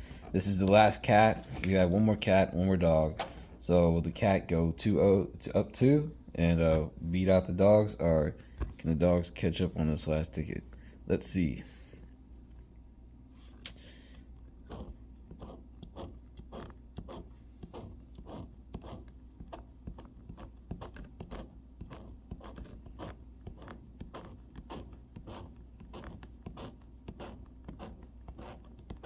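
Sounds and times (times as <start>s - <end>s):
lottery ticket being scratched: 14.6s - 29.0s.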